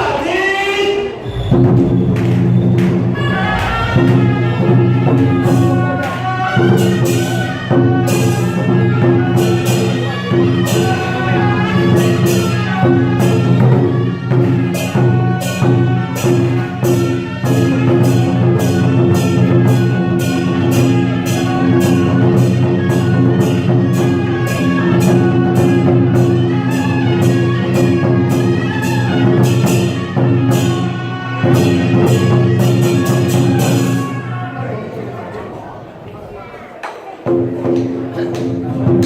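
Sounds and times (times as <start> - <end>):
sharp percussion strokes: 1.1 - 34.6
sustained pitched melody: 1.4 - 6.0.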